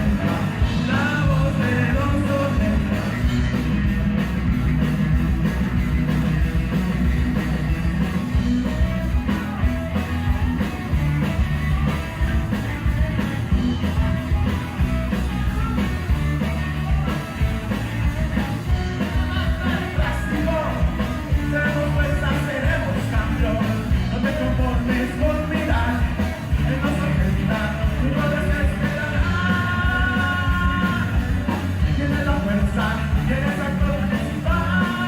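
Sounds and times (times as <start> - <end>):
bass guitar: 0.0 - 35.0
drums: 0.0 - 35.0
electric guitar: 0.0 - 35.0
high guitar lead line: 0.0 - 35.0
person singing: 19.2 - 35.0.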